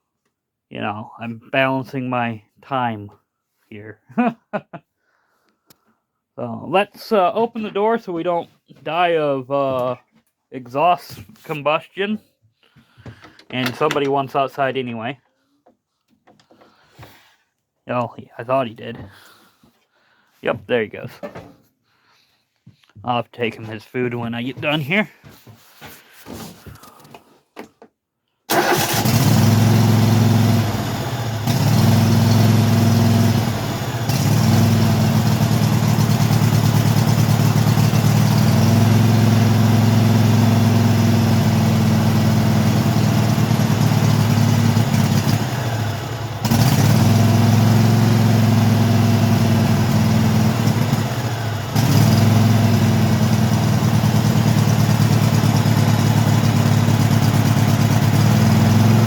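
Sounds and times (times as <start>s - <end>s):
lawn tractor engine running: 28.5s - 59.0s.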